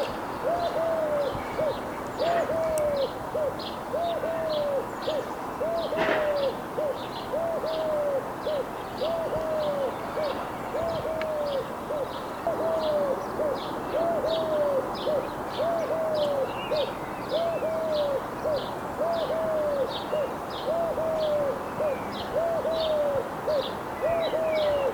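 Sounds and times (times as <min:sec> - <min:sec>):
dove cooing: 0:00.0 - 0:24.9
brief knock: 0:06.0 - 0:06.3.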